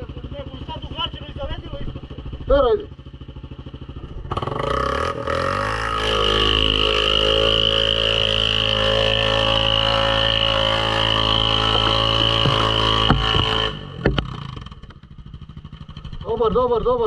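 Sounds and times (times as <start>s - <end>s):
atv engine revving: 0.0s - 17.0s
knocks: 12.2s - 14.7s.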